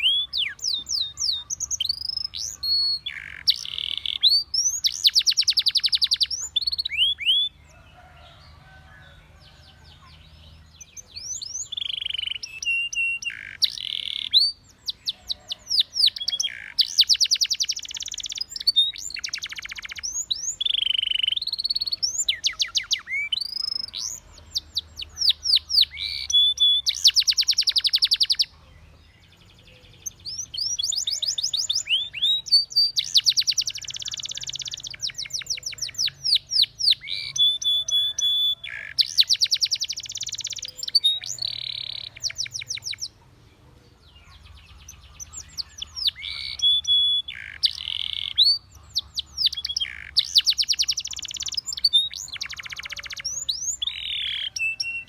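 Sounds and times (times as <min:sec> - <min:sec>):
canary singing trills: 0:00.0 - 0:55.0.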